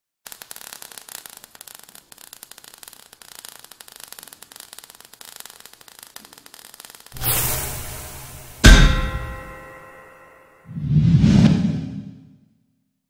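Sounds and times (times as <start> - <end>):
crackling static: 0.3 - 7.7.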